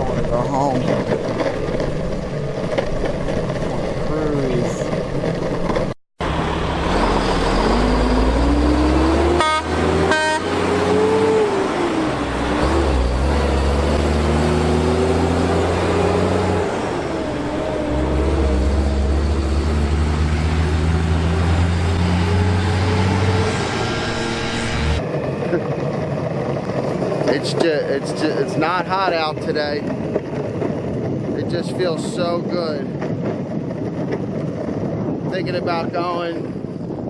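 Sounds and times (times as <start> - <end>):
rumble of wheels and wind: 0.0 - 37.0
horn toots: 9.0 - 11.5
electric motor whine: 21.9 - 25.0.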